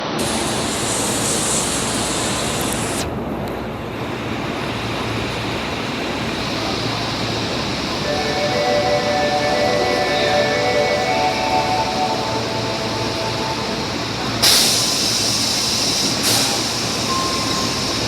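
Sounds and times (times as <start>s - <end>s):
subway train running noise: 0.0s - 18.0s
train door chime: 8.0s - 15.2s, 17.0s - 18.0s.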